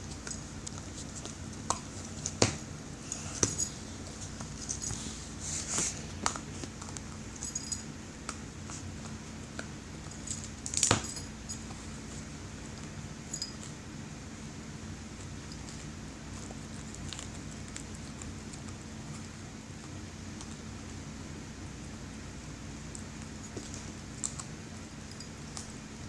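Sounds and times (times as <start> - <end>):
dog chewing on a bone: 15.2 - 20.8.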